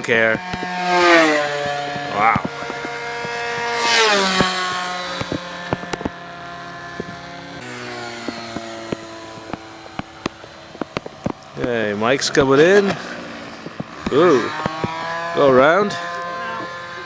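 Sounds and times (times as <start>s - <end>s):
model airplane engine passing: 0.0s - 17.0s
raindrops ticking: 8.3s - 15.3s.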